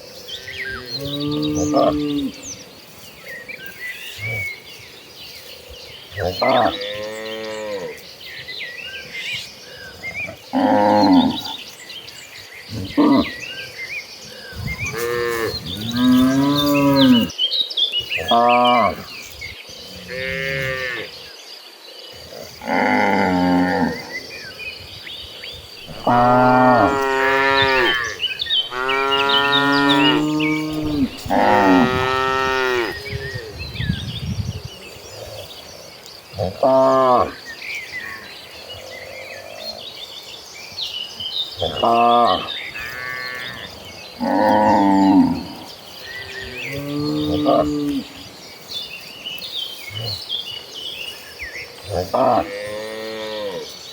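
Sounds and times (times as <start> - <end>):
cow mooing: 25.8 - 33.5.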